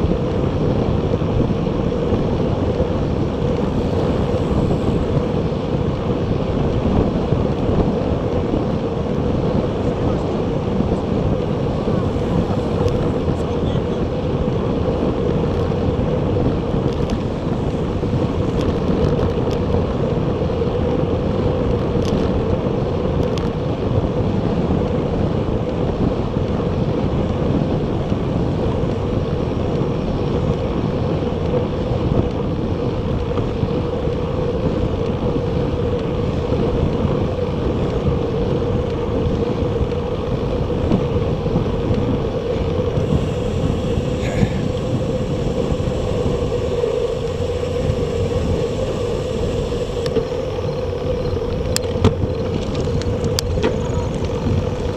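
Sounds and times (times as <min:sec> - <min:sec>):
steady low hum: 0:00.0 - 0:20.8, 0:33.5 - 0:54.9
tyre and road noise: 0:00.0 - 0:54.9
wind rush on microphone: 0:00.0 - 0:54.9.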